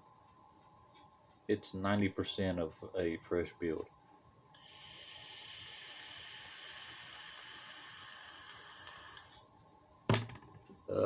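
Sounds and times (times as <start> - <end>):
steady hiss: 4.6 - 9.4.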